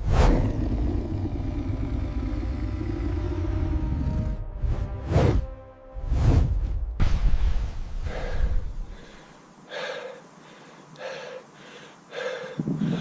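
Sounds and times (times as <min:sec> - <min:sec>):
person breathing out in huffs: 0:08.0 - 0:13.0.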